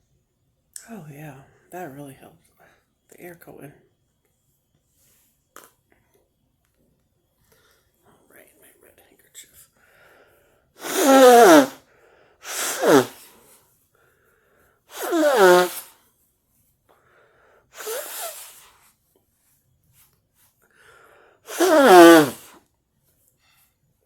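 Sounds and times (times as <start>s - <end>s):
person sneezing: 10.8s - 11.8s, 12.4s - 13.3s, 14.9s - 15.9s, 17.8s - 18.6s, 21.5s - 22.6s.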